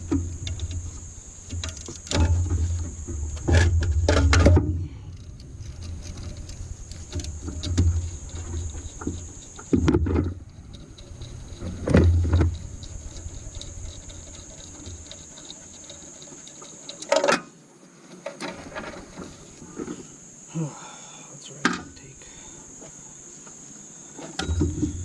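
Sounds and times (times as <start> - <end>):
low uneven rumble: 0.0 - 16.5
tools and engine parts clunking: 0.0 - 20.1, 24.2 - 25.0.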